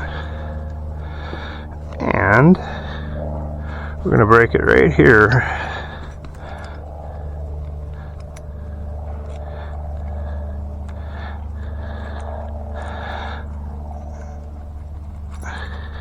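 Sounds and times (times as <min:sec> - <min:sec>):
steady low hum: 0:00.0 - 0:16.0
chain breaker scraping and creaking: 0:04.4 - 0:10.3, 0:14.0 - 0:16.0.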